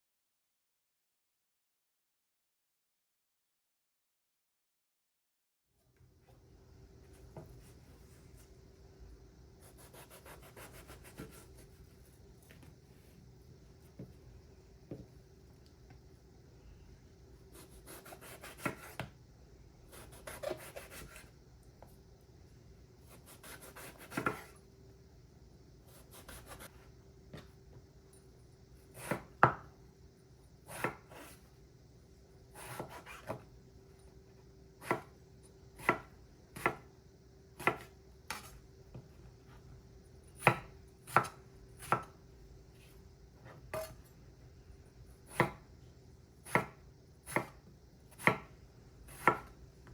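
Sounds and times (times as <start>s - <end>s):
faint steady hum: 5.8s - 49.9s
knife cutting vegetables: 9.6s - 12.7s, 17.5s - 19.1s, 19.9s - 21.3s, 23.0s - 24.6s.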